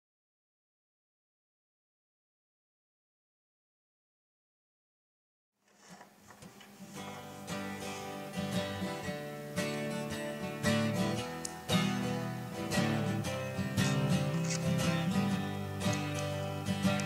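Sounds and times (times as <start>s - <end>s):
strummed acoustic guitar: 6.5s - 17.0s.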